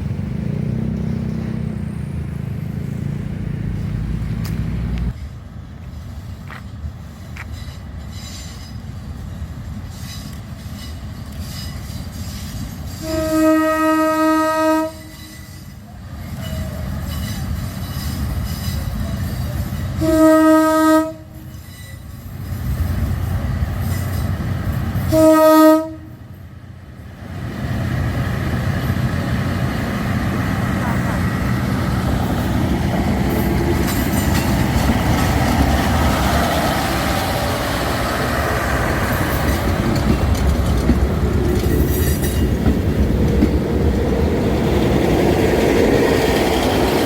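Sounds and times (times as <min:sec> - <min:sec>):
train rumbling on rails: 0:00.0 - 0:47.0
train horn blasts: 0:12.9 - 0:15.8, 0:20.0 - 0:21.6, 0:25.1 - 0:26.2.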